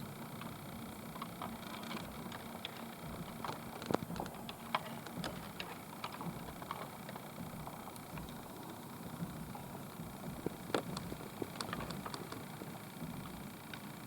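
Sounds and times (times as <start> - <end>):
vehicle running hum: 0.0 - 14.0
light clicks and ticks: 10.3 - 13.9.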